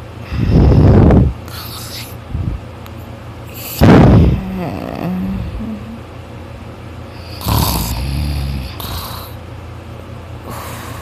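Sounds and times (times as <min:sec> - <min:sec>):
person snoring loudly: 0:03.6 - 0:06.0, 0:07.2 - 0:09.4.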